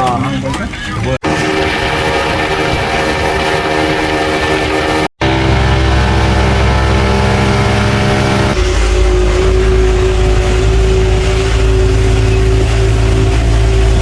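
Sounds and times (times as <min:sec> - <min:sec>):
outboard motor running: 0:00.8 - 0:14.0.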